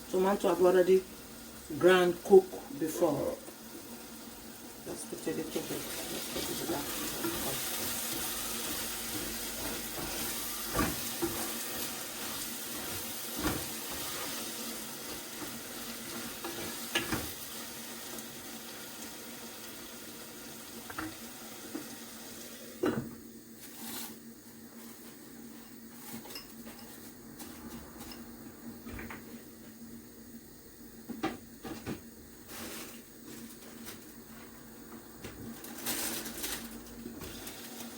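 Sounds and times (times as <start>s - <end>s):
pot cooking with steady hiss: 0.0s - 37.9s
pot and utensils clinking: 26.1s - 27.0s.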